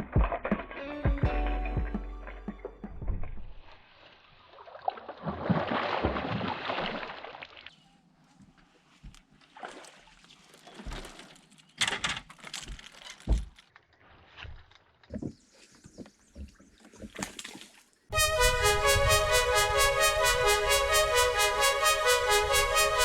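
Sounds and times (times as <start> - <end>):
water sloshing and splashing: 3.9 - 7.8, 9.2 - 13.2, 13.9 - 18.1.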